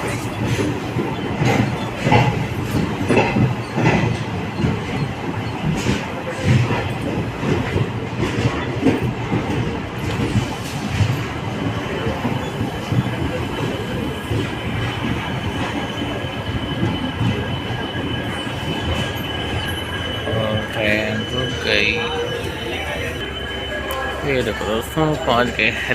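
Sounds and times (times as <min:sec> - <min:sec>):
train wheels clattering on track: 0:00.0 - 0:25.9
train brakes squealing: 0:10.0 - 0:25.9.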